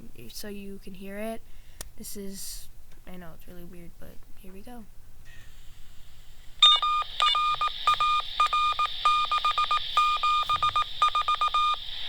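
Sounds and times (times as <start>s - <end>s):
radio hiss: 5.4s - 12.0s
morse code beeping tone: 6.6s - 11.8s.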